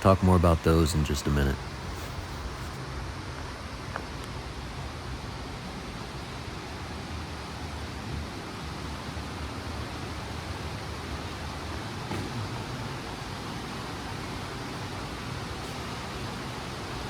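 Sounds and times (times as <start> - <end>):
river and waterfall rushing: 0.0 - 2.7.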